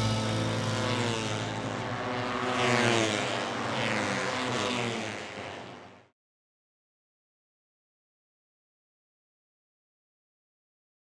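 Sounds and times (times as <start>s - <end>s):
racing motorcycle engines passing: 0.0s - 6.1s.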